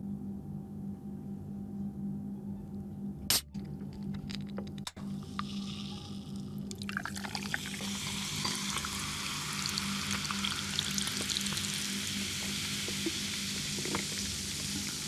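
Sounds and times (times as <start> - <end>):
food sizzling in hot oil: 7.0 - 15.0.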